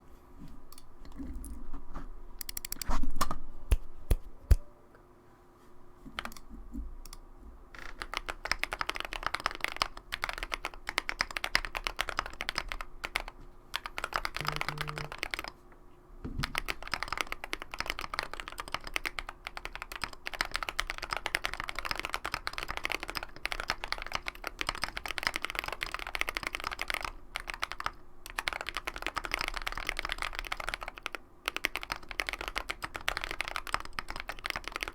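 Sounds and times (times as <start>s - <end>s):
mechanical keyboard typing: 2.4s - 2.9s, 6.2s - 6.4s, 7.8s - 15.6s, 16.4s - 34.9s.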